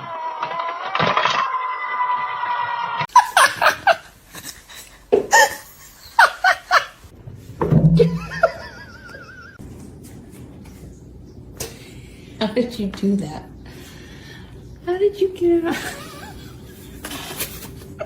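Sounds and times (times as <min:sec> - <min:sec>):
long pitched cry: 0:00.0 - 0:03.1
person laughing hard: 0:03.0 - 0:07.0, 0:08.0 - 0:09.6, 0:15.7 - 0:17.3.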